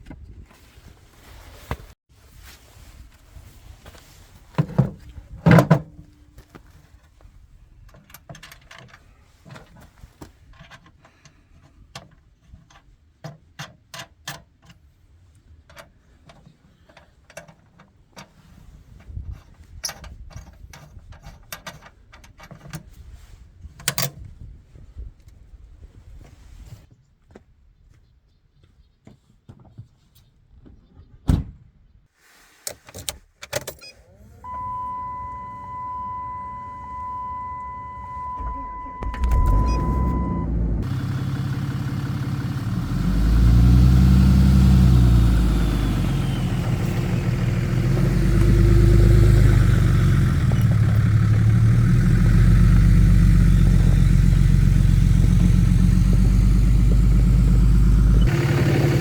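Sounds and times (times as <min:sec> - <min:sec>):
clicks and knocks of gear: 0:23.8 - 0:24.3
loud thump: 0:38.4 - 0:40.9.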